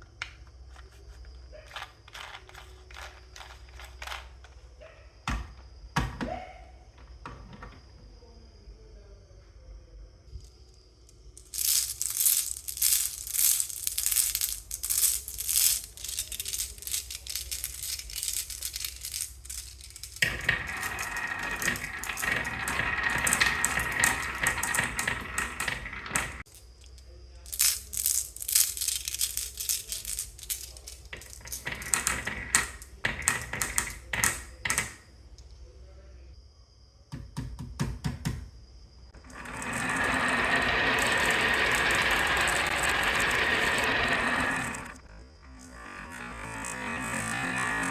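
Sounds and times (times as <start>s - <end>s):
marbles rolling rumble: 1.7s - 4.4s, 11.1s - 26.7s, 27.5s - 35.0s, 39.1s - 47.9s
marbles clattering on wooden track: 1.7s - 4.5s, 11.2s - 35.0s, 39.2s - 47.9s.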